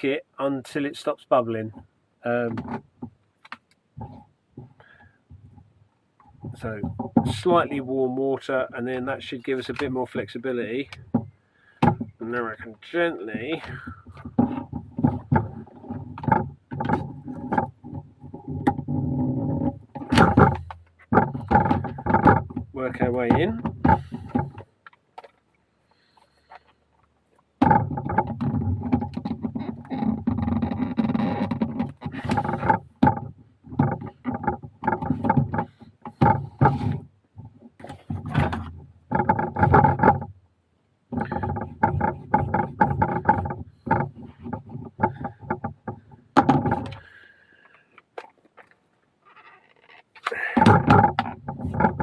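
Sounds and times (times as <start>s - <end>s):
wet leather squeaking and creaking: 12.0s - 40.3s, 41.1s - 52.0s.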